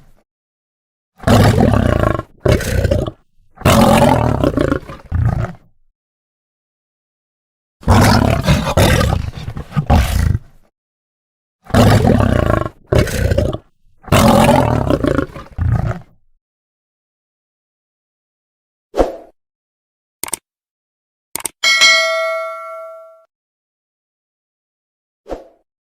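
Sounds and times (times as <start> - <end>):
lion roaring and growling: 1.2 - 5.7, 7.8 - 10.6, 11.7 - 16.2.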